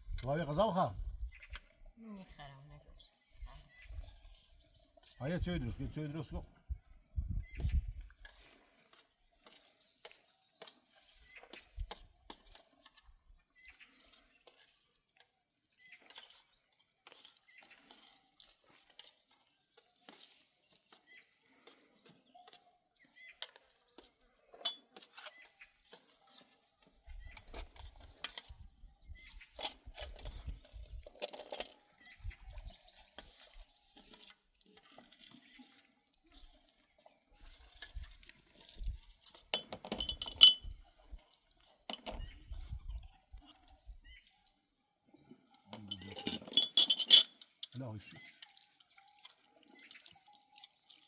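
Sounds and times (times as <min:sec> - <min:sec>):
small clicks and clinks: 0:23.4 - 0:26.2, 0:29.6 - 0:32.2, 0:39.3 - 0:42.4, 0:45.4 - 0:51.0.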